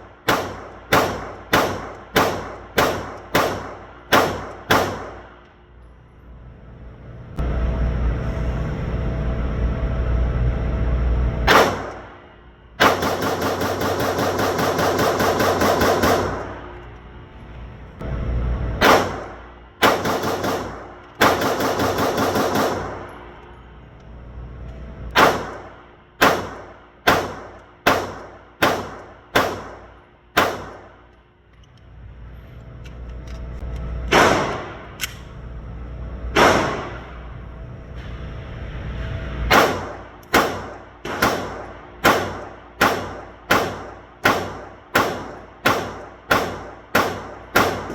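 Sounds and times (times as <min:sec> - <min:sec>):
gunshots: 0:00.0 - 0:05.4, 0:11.4 - 0:12.2, 0:12.8 - 0:16.7, 0:18.8 - 0:23.1, 0:25.1 - 0:31.0, 0:34.1 - 0:35.0, 0:36.3 - 0:37.2, 0:39.5 - 0:47.9.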